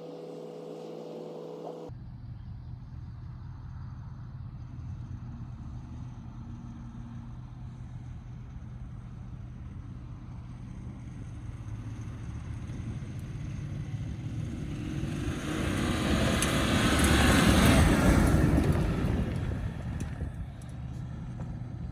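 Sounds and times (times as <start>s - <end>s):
pickup truck engine: 0.0s - 1.9s, 8.6s - 21.9s
road noise: 0.0s - 1.9s, 9.5s - 21.9s.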